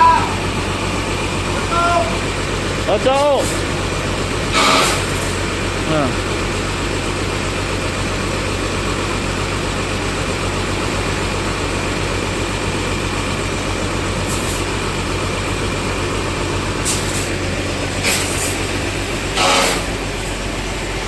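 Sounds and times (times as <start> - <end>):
bus diesel engine idling: 0.0 - 21.0
short hisses: 18.0 - 18.6.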